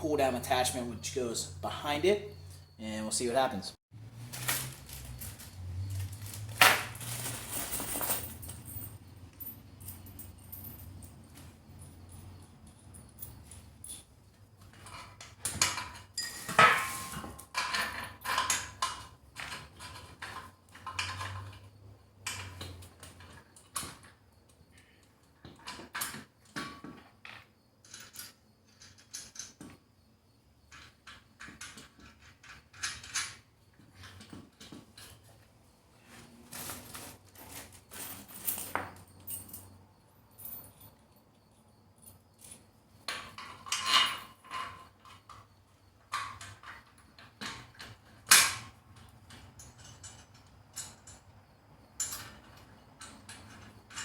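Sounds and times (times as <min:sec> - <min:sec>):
steel parts clinking and clanking: 0:14.8 - 0:24.1, 0:30.7 - 0:35.2, 0:42.1 - 0:51.3, 0:52.0 - 0:54.0.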